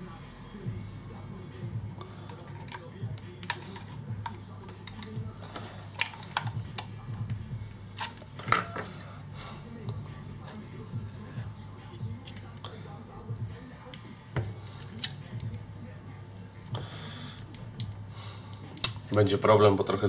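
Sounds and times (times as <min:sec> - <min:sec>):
background music with low beat: 0:00.0 - 0:20.0
clicks and taps of tools: 0:03.4 - 0:05.2, 0:17.4 - 0:19.0.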